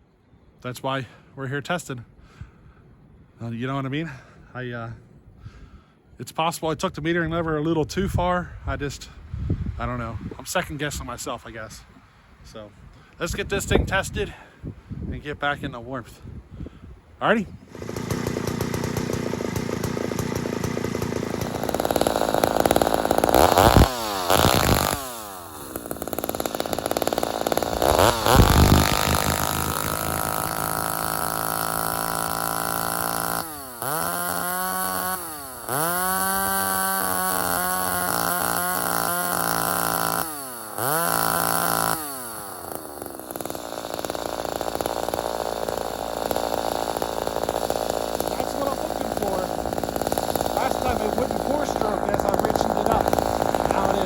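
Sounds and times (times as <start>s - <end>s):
chainsaw revving: 17.6s - 54.0s.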